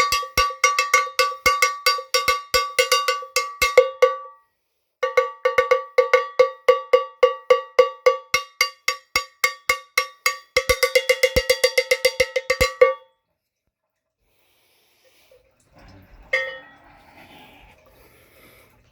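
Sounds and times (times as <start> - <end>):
cowbell struck in a beat: 0.0 - 4.4, 5.0 - 13.1, 16.3 - 16.8.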